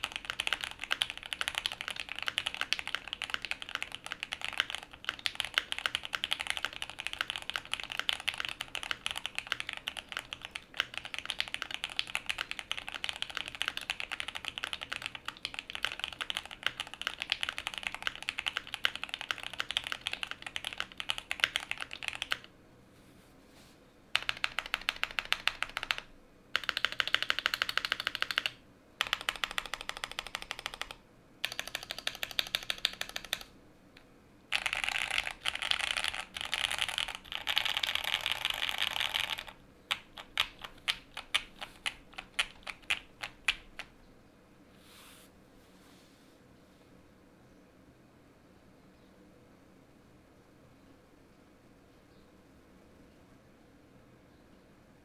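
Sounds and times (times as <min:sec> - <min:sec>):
mechanical keyboard typing: 0:00.0 - 0:22.5, 0:24.2 - 0:33.5, 0:34.5 - 0:43.9.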